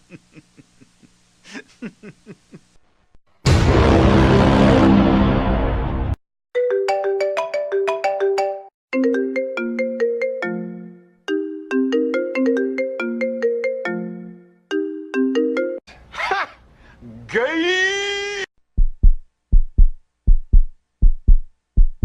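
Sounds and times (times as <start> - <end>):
phone ringtone melody: 6.6 - 15.8.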